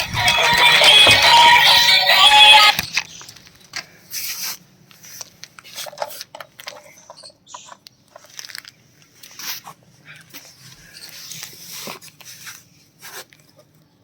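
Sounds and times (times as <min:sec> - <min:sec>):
plastic toys clicking and knocking: 0:00.0 - 0:03.8, 0:05.7 - 0:08.7.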